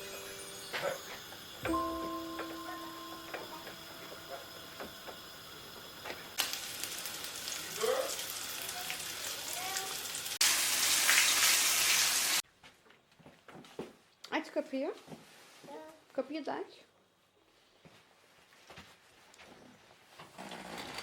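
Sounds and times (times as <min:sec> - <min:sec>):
food sizzling in a frying pan: 0:00.0 - 0:12.4.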